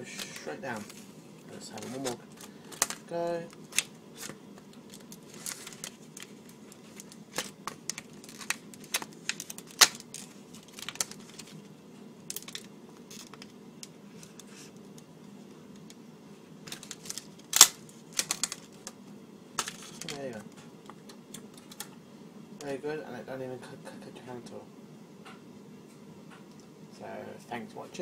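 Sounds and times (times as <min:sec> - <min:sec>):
paper crinkling: 0:00.0 - 0:11.7, 0:16.6 - 0:19.0.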